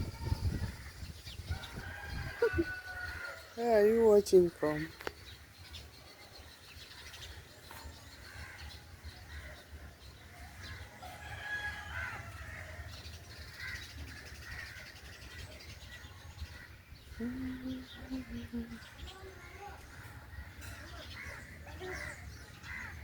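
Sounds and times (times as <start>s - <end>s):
birds chirping and calling: 0.0s - 23.0s.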